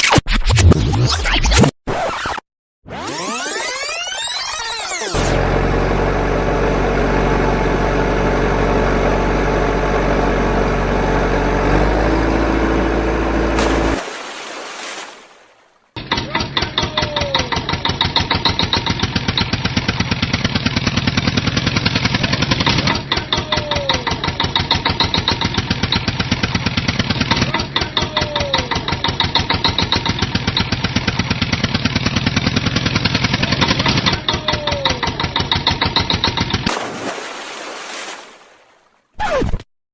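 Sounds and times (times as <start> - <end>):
engine idling with rapid pulses: 16.0 - 36.7.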